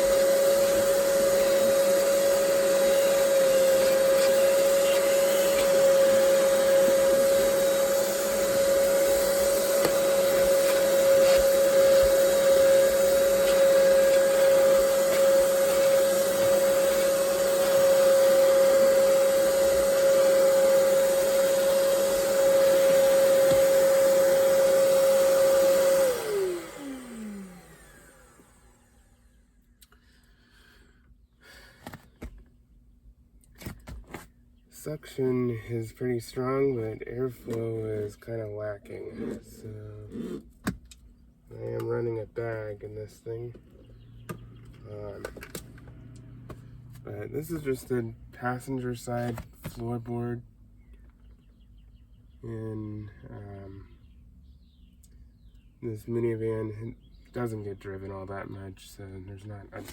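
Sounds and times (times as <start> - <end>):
vacuum motor spinning down: 0.0 - 29.4
shop vacuum whining: 0.0 - 29.5, 34.8 - 40.8, 41.5 - 50.4, 59.2 - 59.9.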